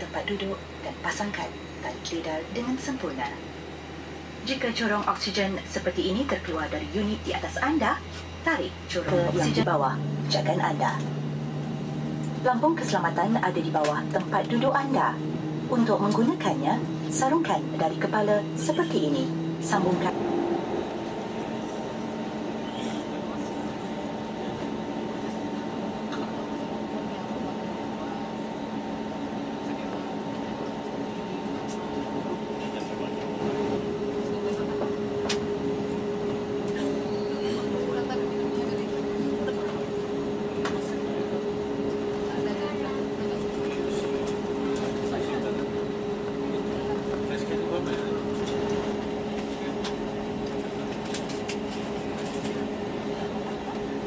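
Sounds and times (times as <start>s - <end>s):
aircraft cabin drone: 0.0s - 54.0s
higher steady tone: 8.5s - 22.7s.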